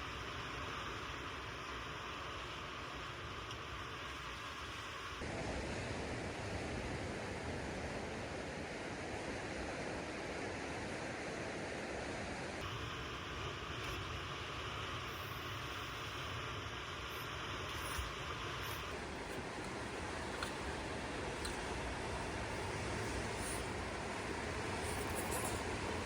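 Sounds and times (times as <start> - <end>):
thin steady hiss: 0.0 - 5.5, 12.5 - 26.0
sea waves washing on shore: 12.4 - 26.0.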